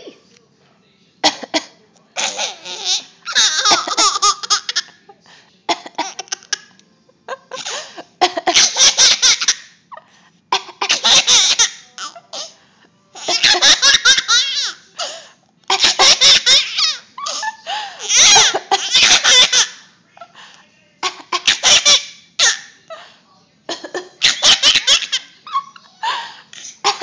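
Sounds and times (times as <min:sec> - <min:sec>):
baby laughing: 0:02.2 - 0:04.9, 0:07.5 - 0:09.7, 0:10.6 - 0:12.5, 0:13.2 - 0:14.8, 0:15.7 - 0:19.8, 0:24.2 - 0:25.9.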